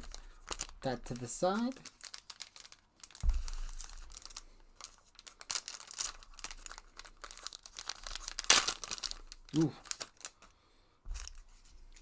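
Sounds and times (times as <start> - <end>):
foil wrapper crinkling and tearing: 0.0 - 10.6
dull thump: 3.2 - 3.8.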